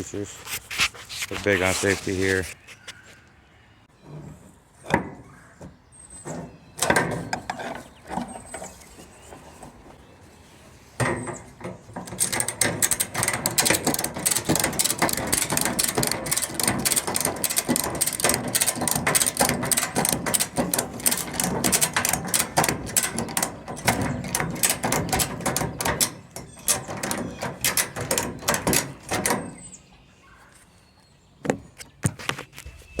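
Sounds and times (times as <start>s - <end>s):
ratchet strap clicking: 12.1s - 29.5s.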